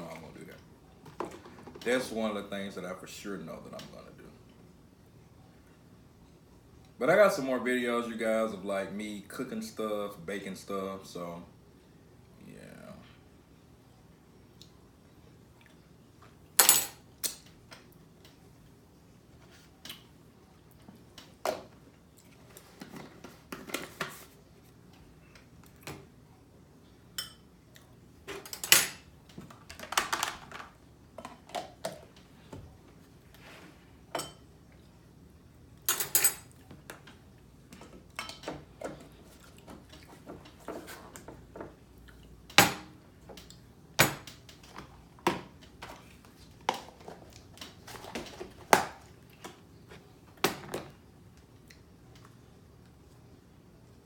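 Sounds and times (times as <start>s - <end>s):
dishes and cutlery clattering: 35.9s - 36.5s.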